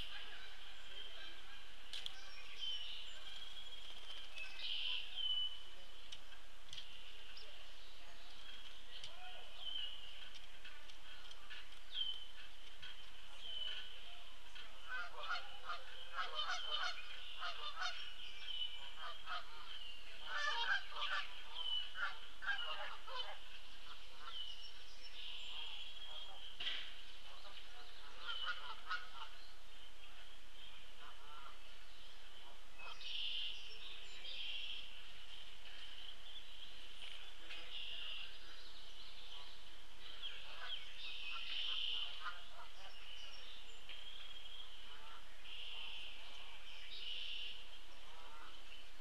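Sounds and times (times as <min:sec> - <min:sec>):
songbirds singing: 0:00.0 - 0:49.0
geese honking: 0:14.9 - 0:18.0, 0:19.0 - 0:24.3, 0:27.4 - 0:29.4.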